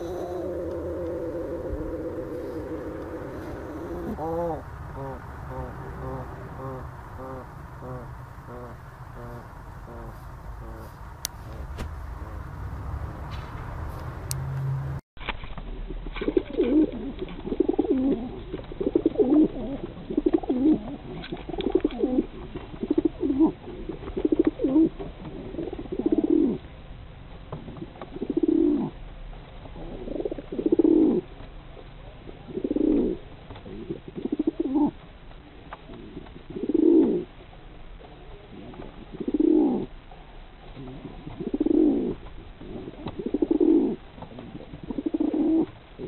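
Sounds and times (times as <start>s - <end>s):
pigeons cooing: 0.0s - 11.1s, 16.2s - 26.7s, 27.6s - 29.0s, 29.7s - 31.4s, 32.3s - 35.0s, 35.9s - 37.4s, 38.0s - 46.0s.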